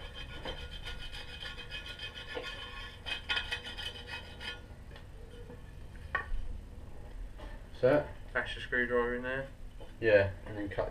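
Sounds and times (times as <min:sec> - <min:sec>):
wire brush scrubbing metal: 0:00.0 - 0:04.6.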